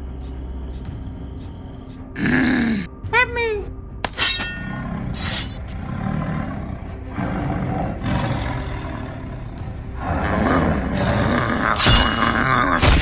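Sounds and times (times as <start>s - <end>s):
rough low roar: 4.6s - 13.0s.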